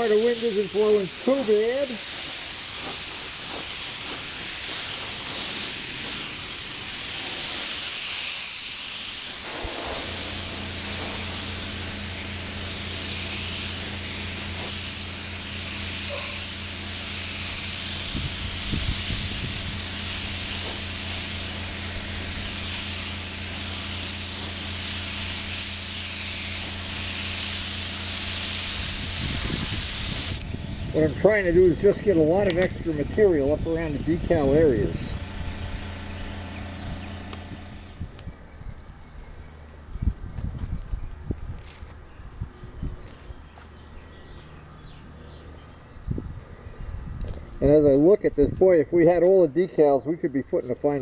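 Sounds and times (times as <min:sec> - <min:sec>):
spray gun hissing: 0:00.0 - 0:30.5.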